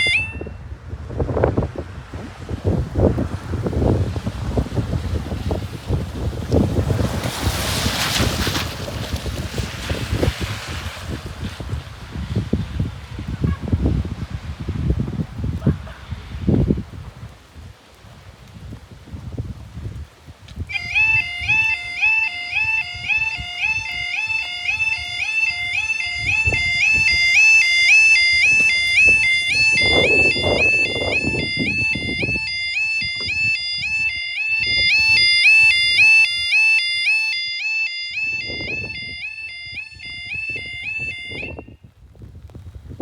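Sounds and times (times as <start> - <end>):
level crossing alarm warbling: 0.0 - 0.6, 20.7 - 41.8.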